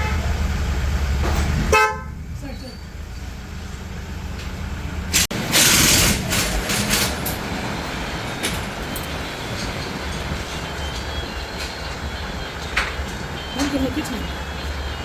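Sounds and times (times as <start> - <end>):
vehicle engine rumbling: 0.0 - 15.0
hissing bursts: 5.2 - 6.5.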